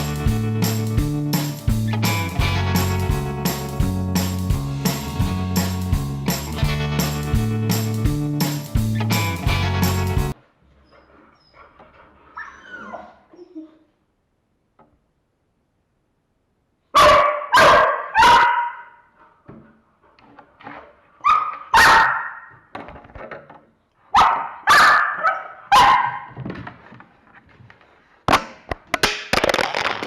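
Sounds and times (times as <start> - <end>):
dog barking: 16.9 - 19.1, 21.2 - 22.5, 24.1 - 26.4.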